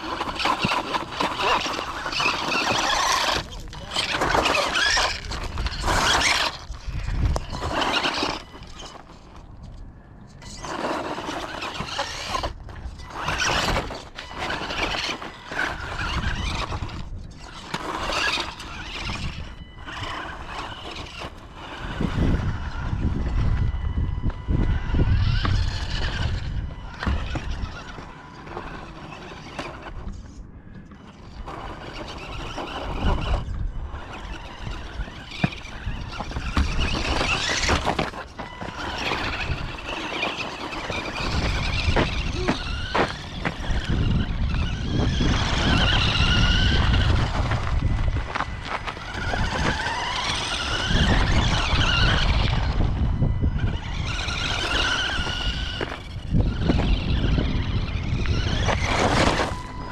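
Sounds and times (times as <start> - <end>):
rc car motor whining: 0.0 - 59.9
tyre rumble: 31.4 - 59.9.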